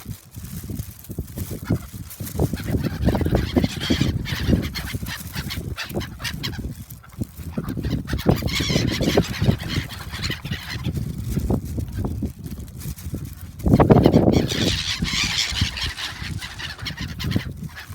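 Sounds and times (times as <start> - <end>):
gulls calling loudly: 2.4 - 6.8, 7.4 - 11.1, 13.7 - 17.9.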